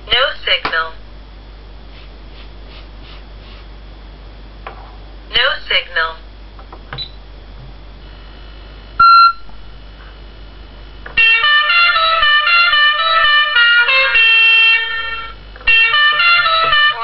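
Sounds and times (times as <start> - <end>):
horn beep: 9.0 - 9.5, 11.2 - 17.0
musical horn playing a tune: 11.2 - 17.0.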